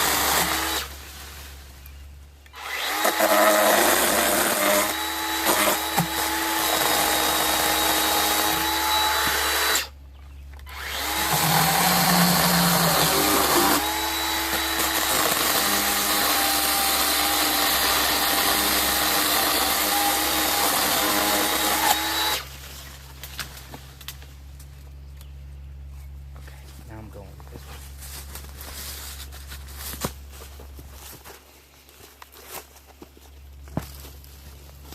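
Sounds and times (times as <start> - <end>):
battery chainsaw running: 2.6 - 9.9, 10.7 - 22.5.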